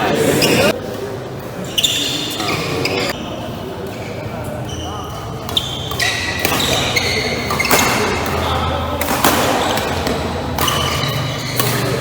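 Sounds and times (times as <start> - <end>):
shoes squeaking on court floor: 0.2 - 12.0
rackets striking shuttlecock: 5.1 - 12.0.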